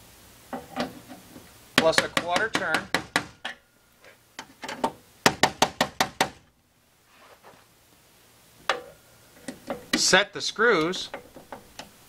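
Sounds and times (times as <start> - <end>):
sharp metallic tapping on nuts: 1.8 - 3.6, 4.4 - 6.4, 8.7 - 10.2, 10.8 - 12.0.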